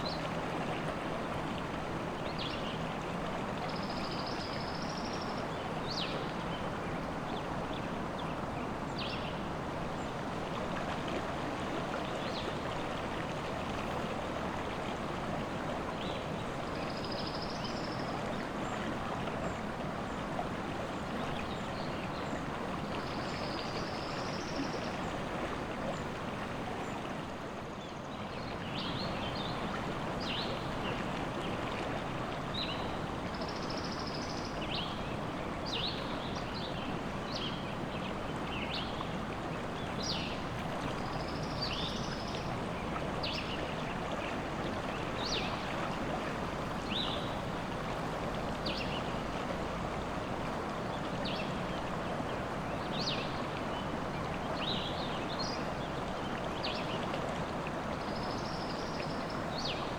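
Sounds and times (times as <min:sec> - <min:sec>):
river water rushing: 0:28.8 - 0:59.9.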